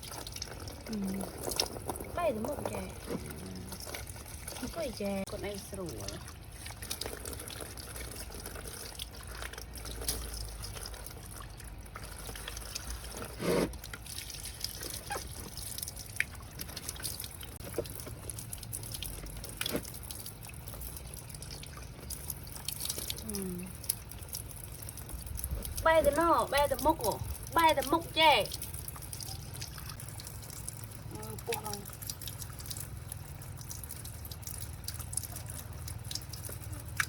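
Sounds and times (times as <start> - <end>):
water trickling and dripping: 0.0 - 37.0.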